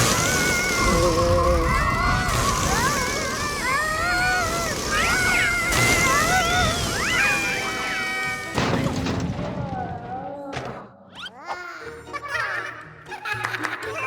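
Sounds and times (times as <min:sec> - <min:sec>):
high sliding squeaks and chirps: 0:00.0 - 0:09.0.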